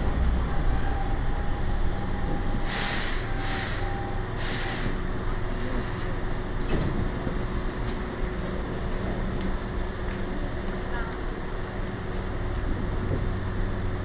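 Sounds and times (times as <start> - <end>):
train low rumble: 0.0 - 14.0
short air hisses: 2.6 - 5.0.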